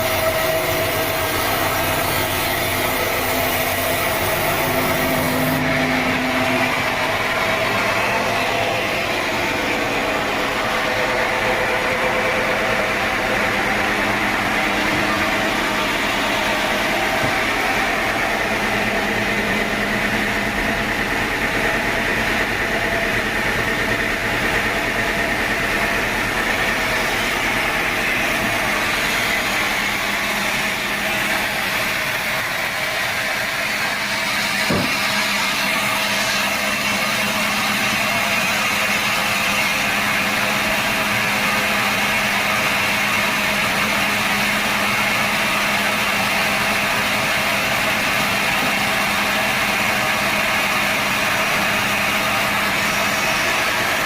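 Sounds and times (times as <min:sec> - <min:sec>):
sawmill machinery humming: 0:00.0 - 0:54.0
sharp knock: 0:34.6 - 0:35.1.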